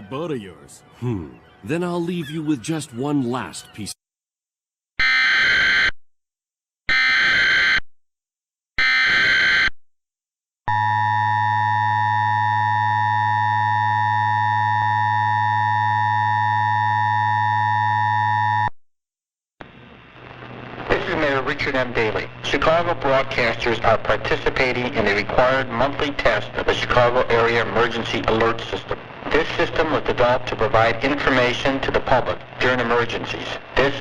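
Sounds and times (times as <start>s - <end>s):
harsh buzzing attention tone: 8.8s - 9.8s.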